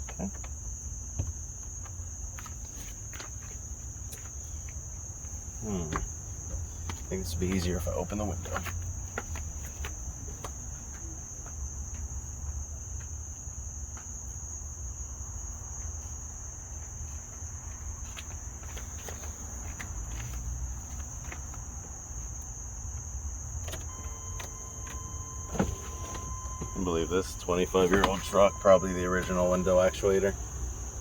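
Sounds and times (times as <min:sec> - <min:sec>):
insects trilling: 0:00.0 - 0:31.0.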